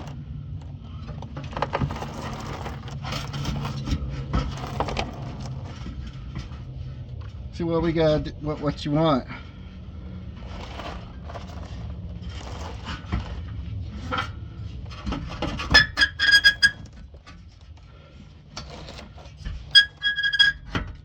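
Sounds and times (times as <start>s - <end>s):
blade squealing: 15.8s - 16.8s, 19.7s - 20.7s.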